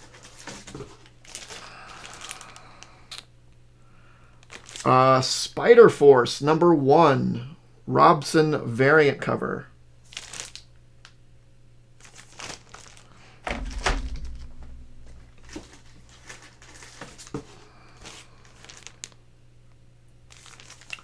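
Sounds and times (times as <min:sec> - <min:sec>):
packing material rustling: 0:00.0 - 0:03.2, 0:04.4 - 0:04.9, 0:10.0 - 0:10.7, 0:12.0 - 0:19.2, 0:20.3 - 0:21.0
heavy thump: 0:13.4 - 0:16.0.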